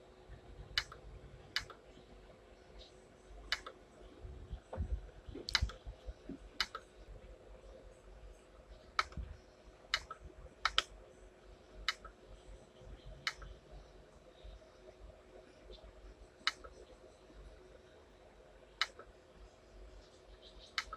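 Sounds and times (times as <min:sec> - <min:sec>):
computer mouse clicks: 0:00.8 - 0:01.0, 0:01.6 - 0:01.8, 0:03.5 - 0:03.8, 0:05.4 - 0:05.8, 0:06.6 - 0:06.9, 0:09.0 - 0:09.2, 0:09.9 - 0:10.9, 0:11.8 - 0:12.2, 0:13.2 - 0:13.5, 0:16.4 - 0:16.8, 0:18.8 - 0:19.1.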